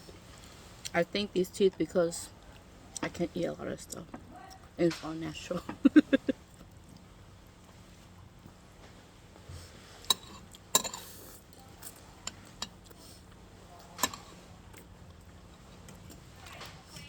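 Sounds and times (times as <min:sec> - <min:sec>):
utensils clinking on plates: 0:10.0 - 0:12.9, 0:14.0 - 0:14.4.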